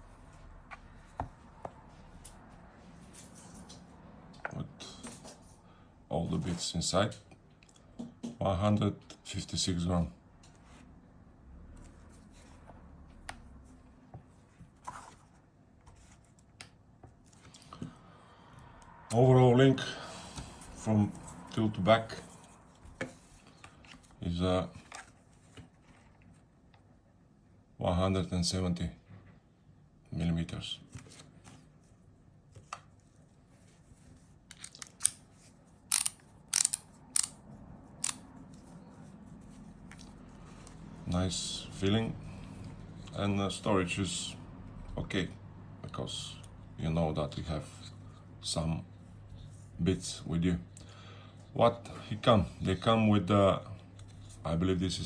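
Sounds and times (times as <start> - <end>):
hand tool clicks and rustles: 35.9 - 37.4, 38.0 - 38.2.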